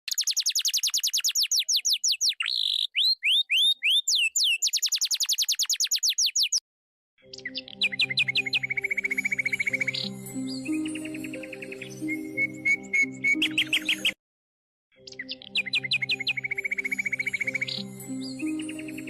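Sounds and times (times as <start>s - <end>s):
high bird-like chirping: 0.1s - 6.6s, 7.3s - 14.2s, 15.0s - 19.0s
hooked whistles: 0.1s - 6.6s.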